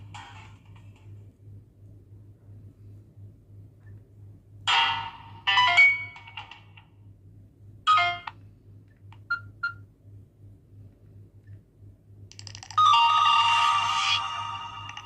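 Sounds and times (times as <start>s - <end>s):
electronic ringtone tune: 7.9s - 8.3s, 12.8s - 15.0s.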